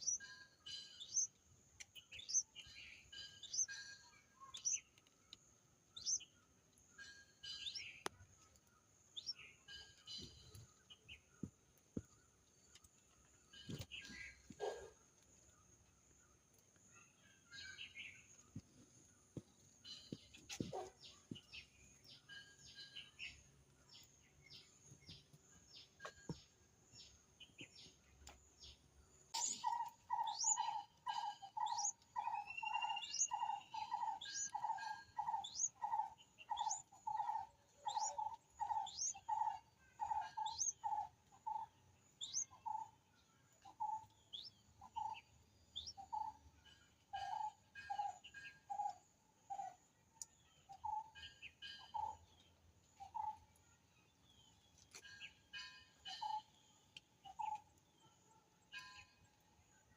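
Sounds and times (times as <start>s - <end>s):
high chirps of nestling birds: 29.3s - 41.0s.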